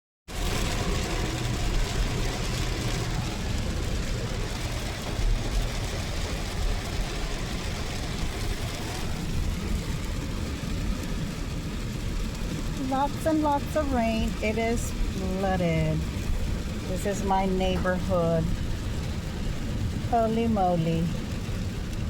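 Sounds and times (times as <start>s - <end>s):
car engine and tyres rumbling: 0.3s - 22.0s
heavy rain hissing: 0.3s - 22.0s.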